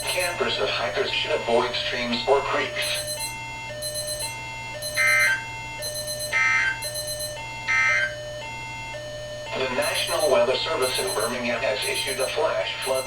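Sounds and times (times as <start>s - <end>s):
stepping steady tones: 0.0s - 13.0s
warbling data tones: 2.7s - 8.1s, 9.6s - 13.0s.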